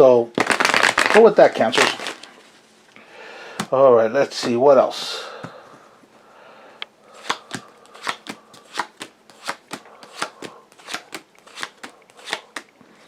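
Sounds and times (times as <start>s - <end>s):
cards being shuffled: 0.4s - 2.6s, 7.2s - 13.0s.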